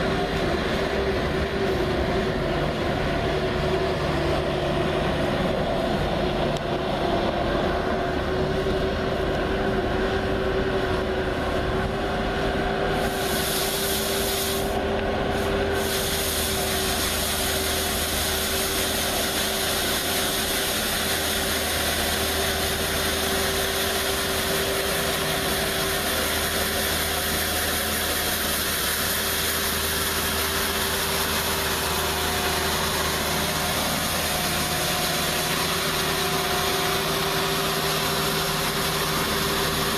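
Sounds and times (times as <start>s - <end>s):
skid steer engine running: 0.0s - 39.9s
steady hiss: 13.0s - 39.9s.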